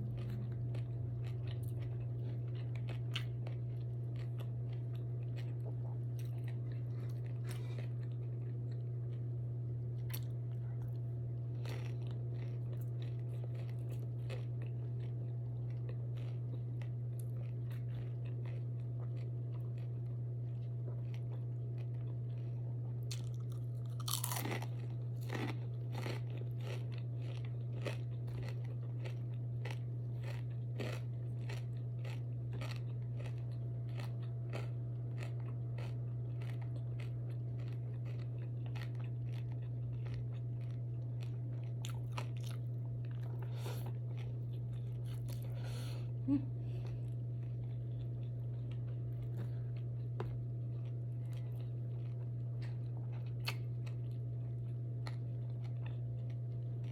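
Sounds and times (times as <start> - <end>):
low electrical hum: 0.0 - 56.9
person chewing crunchy food: 0.0 - 56.9.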